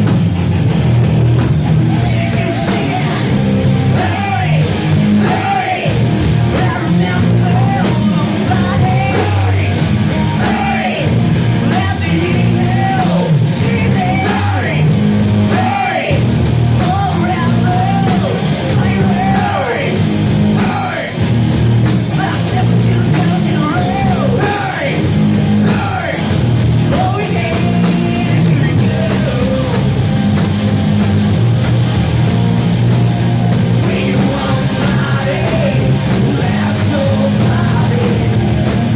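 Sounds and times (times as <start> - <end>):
live rock band playing: 0.0 - 38.9
person singing and shouting: 1.7 - 21.3, 22.1 - 29.9.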